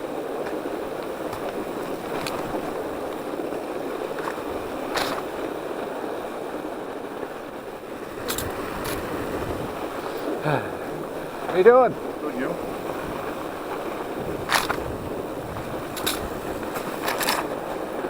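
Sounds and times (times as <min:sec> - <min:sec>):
bike tyres rolling over snow: 0:00.0 - 0:18.0
bike knocks: 0:00.4 - 0:05.4, 0:14.4 - 0:14.9, 0:15.6 - 0:17.8.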